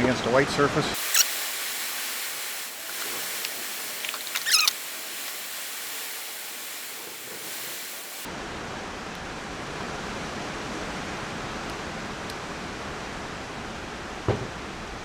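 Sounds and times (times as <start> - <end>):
steady hiss: 1.0 - 8.3.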